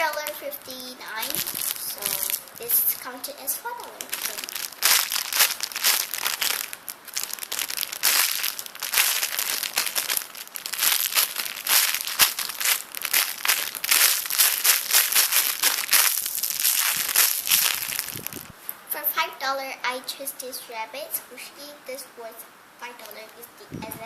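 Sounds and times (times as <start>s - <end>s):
foam toy crinkling and squeezed: 0.0s - 18.6s.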